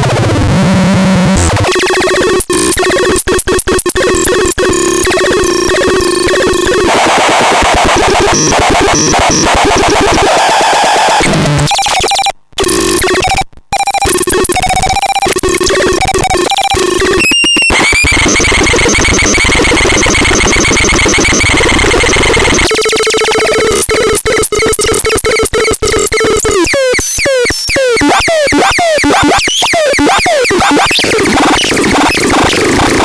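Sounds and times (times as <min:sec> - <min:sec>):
electronic buzzing tones: 0:00.6 - 0:33.0
dense electronic noise: 0:17.7 - 0:33.0.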